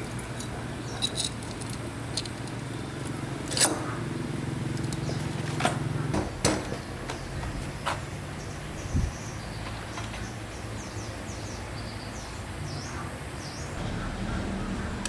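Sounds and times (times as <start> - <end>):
low hum: 13.8 - 15.0.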